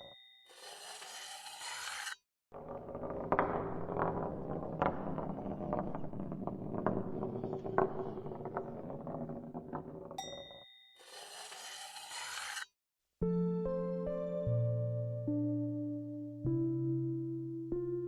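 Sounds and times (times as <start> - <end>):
scraping and rasping: 0.5 - 10.2, 11.0 - 12.7.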